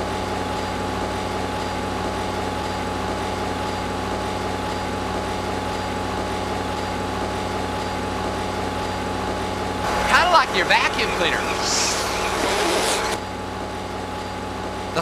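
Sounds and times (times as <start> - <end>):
fish pump humming: 9.8 - 13.2.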